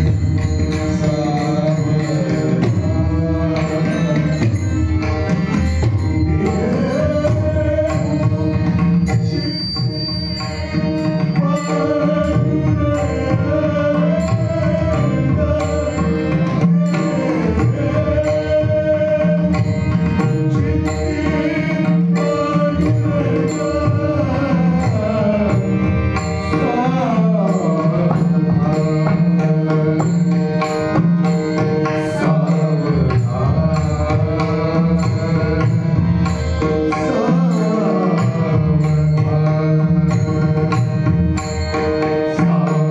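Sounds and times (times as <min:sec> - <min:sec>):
steady accompanying tones: 0:00.0 - 0:42.9
person singing long gliding notes: 0:11.3 - 0:30.0.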